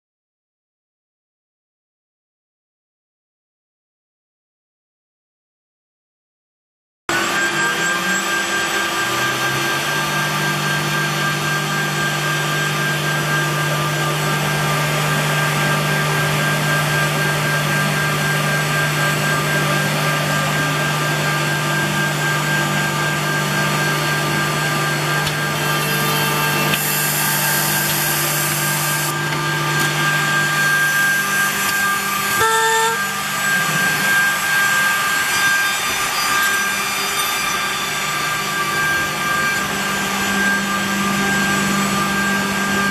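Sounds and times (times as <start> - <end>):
machine motor hum and whine: 7.1 - 42.9
hiss of wood cutting: 25.2 - 29.2.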